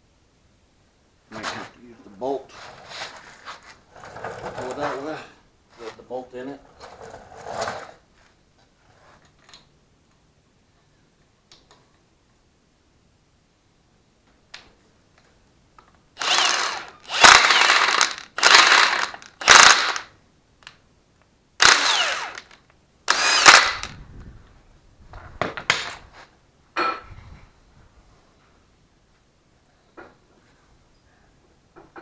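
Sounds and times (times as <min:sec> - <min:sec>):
metal camshaft scraping in bearings: 0:16.2 - 0:20.0.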